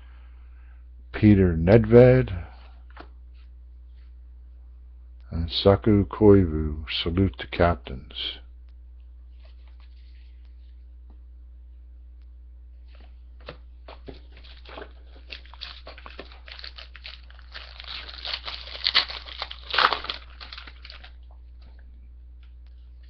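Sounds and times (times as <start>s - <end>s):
wrapper crinkling and tearing: 14.1s - 21.4s.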